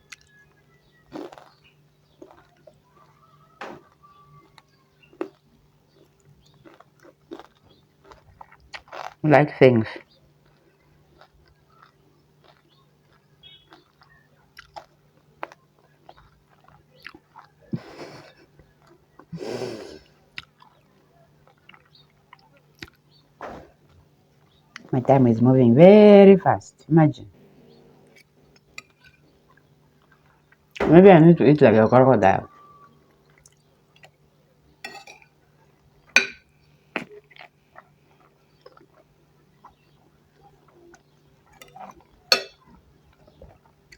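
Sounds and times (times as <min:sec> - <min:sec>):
person chewing: 0:00.0 - 0:03.2, 0:03.8 - 0:09.2, 0:10.0 - 0:24.9, 0:33.1 - 0:34.2, 0:34.8 - 0:43.9
cutlery clinking against dish: 0:34.9 - 0:35.4, 0:36.2 - 0:36.5, 0:41.6 - 0:42.6.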